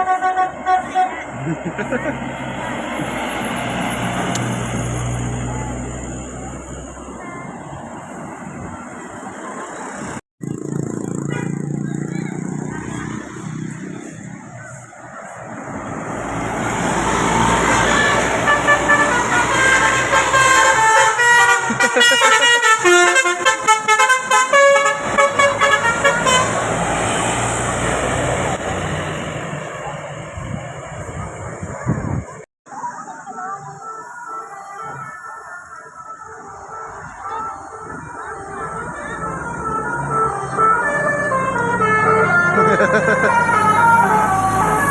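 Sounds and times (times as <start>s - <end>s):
bus horn playing a tune: 0.0s - 1.4s, 11.2s - 11.6s, 17.5s - 27.0s, 38.6s - 44.9s
bus passing: 0.0s - 44.9s.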